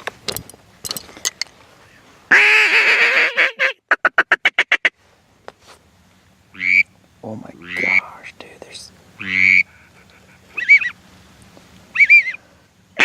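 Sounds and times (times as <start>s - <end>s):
duck-like quacking call: 2.3s - 4.9s, 6.6s - 6.9s, 7.6s - 8.0s, 9.2s - 10.9s.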